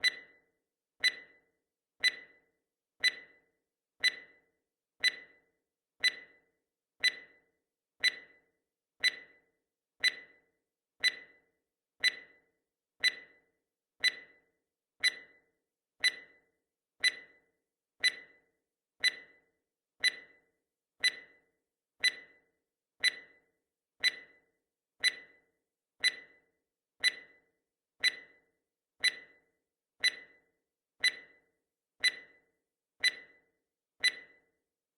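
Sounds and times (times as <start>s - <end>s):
timer ticking: 0.0s - 0.4s, 1.0s - 1.4s, 2.0s - 2.4s, 3.0s - 3.4s, 4.0s - 6.4s, 7.0s - 7.4s, 8.0s - 8.4s, 9.0s - 13.4s, 14.0s - 14.4s, 15.0s - 15.4s, 16.0s - 16.4s, 17.0s - 17.4s, 18.0s - 18.4s, 19.0s - 20.4s, 21.0s - 21.4s, 22.0s - 22.4s, 23.0s - 23.4s, 24.0s - 25.4s, 26.0s - 26.4s, 27.0s - 27.4s, 28.0s - 33.4s, 34.0s - 34.5s.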